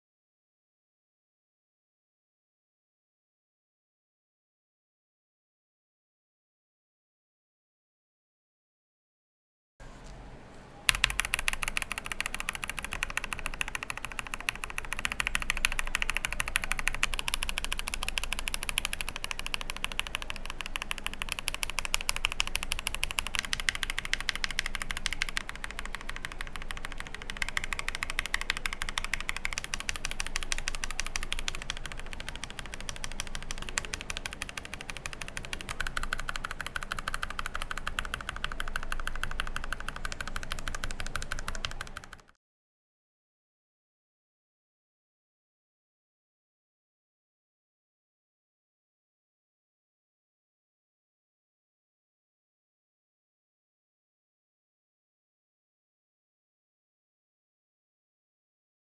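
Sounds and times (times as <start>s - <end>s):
fast mechanical keyboard typing: 10.9s - 42.4s.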